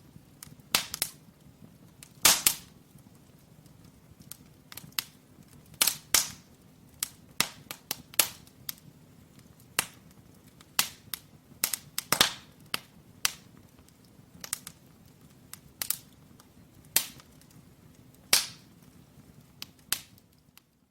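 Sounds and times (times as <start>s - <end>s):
firewood crackling: 0.0s - 20.9s.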